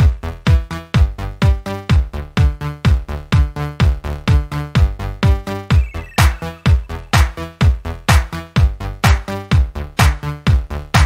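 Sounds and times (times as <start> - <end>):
electronic dance music: 5.6 - 9.3.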